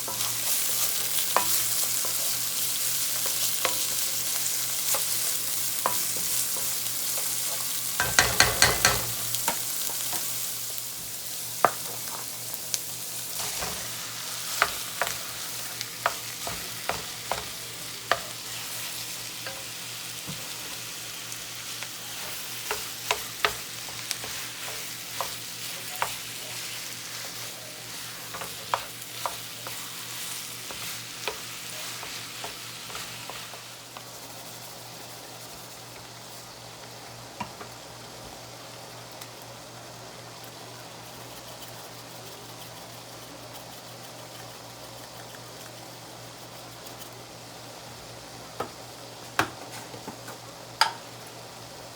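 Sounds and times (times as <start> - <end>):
spatula tapping and scraping pan: 0.0 - 10.3, 13.4 - 20.7, 21.8 - 34.1, 49.4 - 51.1
food sizzling in a frying pan: 0.0 - 51.9.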